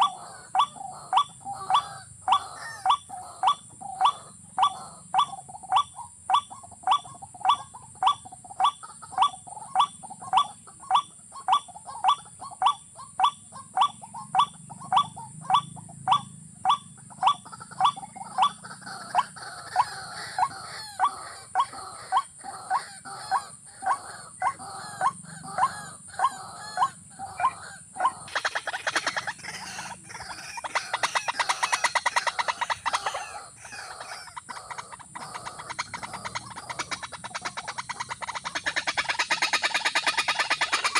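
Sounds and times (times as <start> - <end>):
bird calling upward-sliding notes: 14.3 - 40.9.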